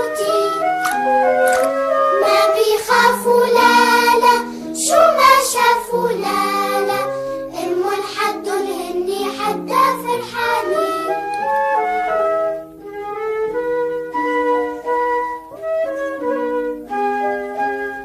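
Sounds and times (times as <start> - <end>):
child singing: 0.0 - 1.2, 2.1 - 11.4
instrumental backing music: 0.0 - 18.0.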